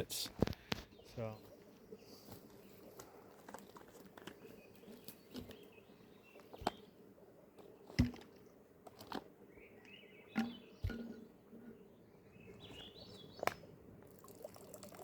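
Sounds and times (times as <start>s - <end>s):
faint bird chirps: 9.5s - 13.7s.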